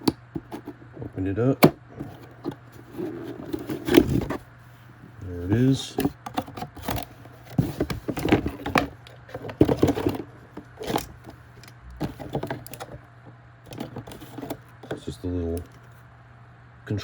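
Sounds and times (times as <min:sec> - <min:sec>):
packaging rustling: 0:01.9 - 0:13.0, 0:13.7 - 0:15.9.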